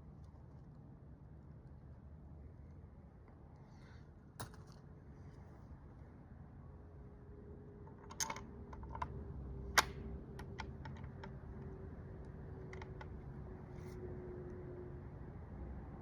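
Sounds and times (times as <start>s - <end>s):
rifle metallic clicks: 9.8s - 11.0s.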